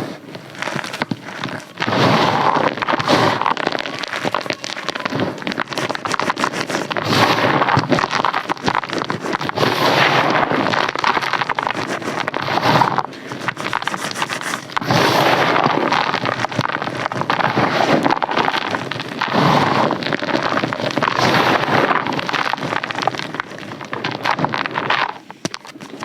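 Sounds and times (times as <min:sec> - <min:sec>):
close-up crisp crunching: 0:00.0 - 0:26.0.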